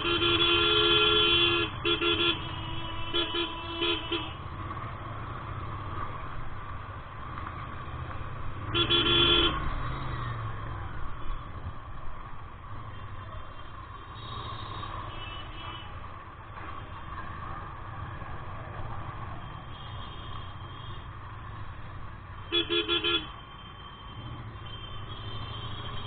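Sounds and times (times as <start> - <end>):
engine rumble and road noise: 0.0 - 26.0
vehicle horn blast: 8.7 - 9.6.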